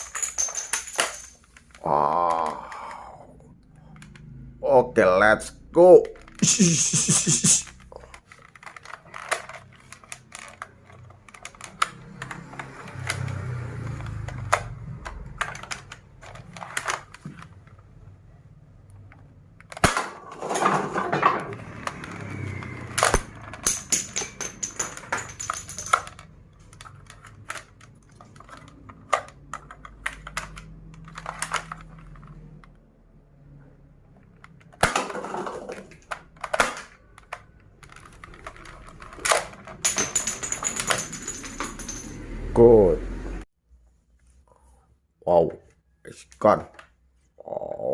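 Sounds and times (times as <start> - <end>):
plastic toy guns clicking: 7.5 - 17.5.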